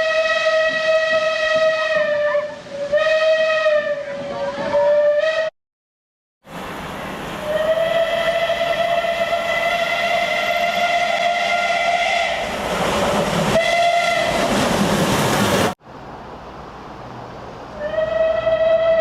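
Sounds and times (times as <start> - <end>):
steam locomotive whistle: 0.0 - 5.5, 7.4 - 12.5, 13.6 - 14.4, 17.8 - 19.0.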